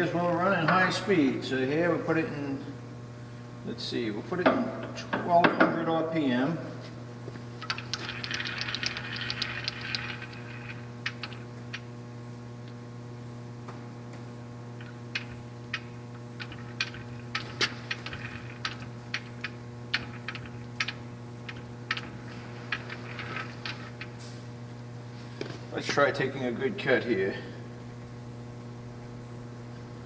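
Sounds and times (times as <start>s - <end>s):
lathe humming: 7.2s - 12.4s.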